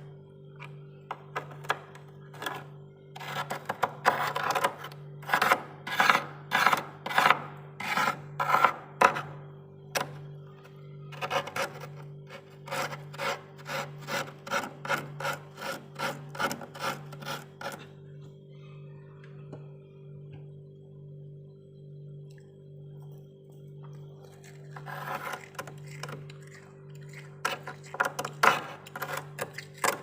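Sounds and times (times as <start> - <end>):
steady low hum: 0.0 - 30.0
spoon scraping frost: 2.2 - 9.4, 11.1 - 17.9, 24.1 - 30.0.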